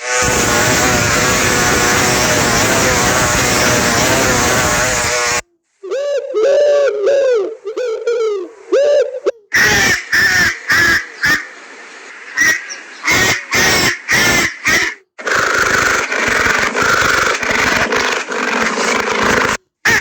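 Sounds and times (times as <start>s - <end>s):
duck quacking ringtone: 9.6s - 11.5s.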